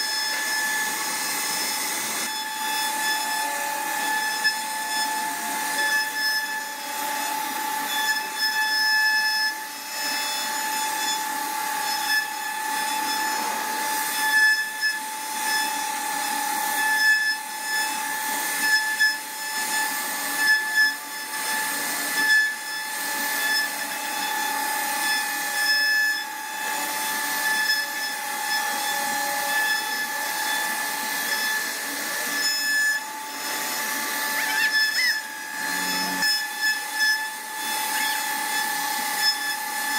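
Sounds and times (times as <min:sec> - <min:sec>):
router bit cutting wood: 0:00.0 - 0:39.9
router spindle whining: 0:00.0 - 0:39.9.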